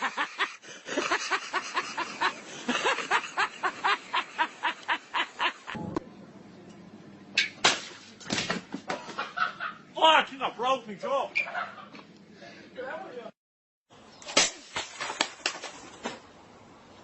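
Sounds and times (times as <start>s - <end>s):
person laughing hard: 0.0s - 5.8s.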